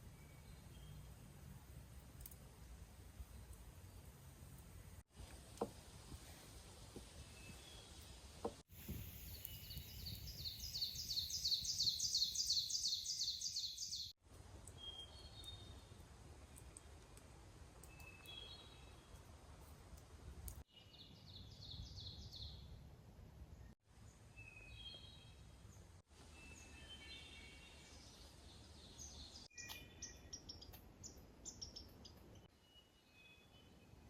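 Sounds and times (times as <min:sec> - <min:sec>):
songbirds chirping: 0:06.9 - 0:17.0, 0:17.8 - 0:19.2, 0:20.5 - 0:22.8, 0:23.4 - 0:34.0.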